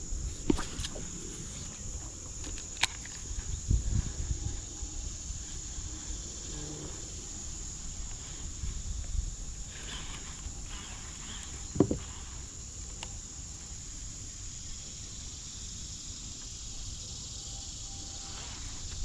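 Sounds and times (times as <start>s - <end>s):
insects buzzing: 0.0s - 19.0s
sharp thump: 11.8s - 12.2s.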